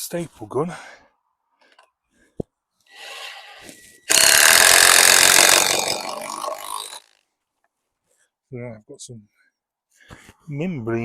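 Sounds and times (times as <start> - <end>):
power drill grinding into wood: 2.9 - 7.2.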